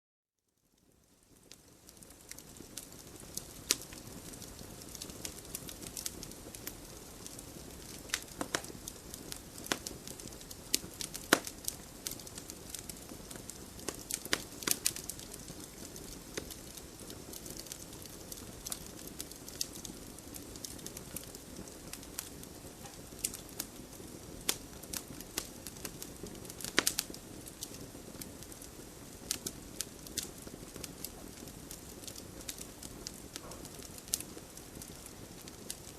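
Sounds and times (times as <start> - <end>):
campfire crackling and popping: 0.8 - 35.9.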